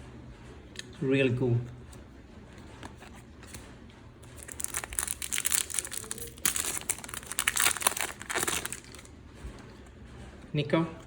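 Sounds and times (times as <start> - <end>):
foil packet crinkling and tearing: 4.4 - 9.1.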